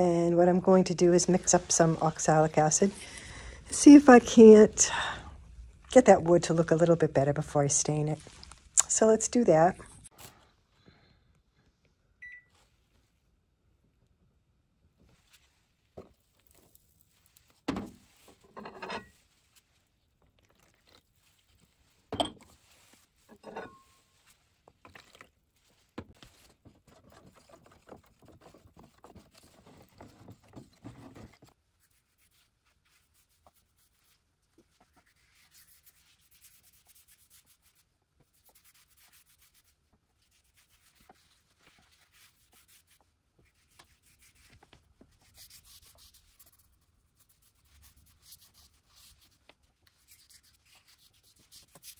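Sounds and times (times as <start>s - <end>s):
scrubbing strokes on wood: 31.8s - 44.6s.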